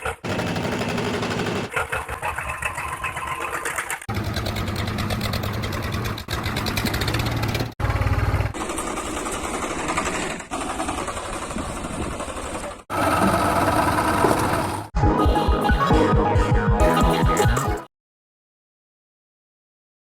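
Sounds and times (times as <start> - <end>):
small engine clattering: 0.0 - 14.9.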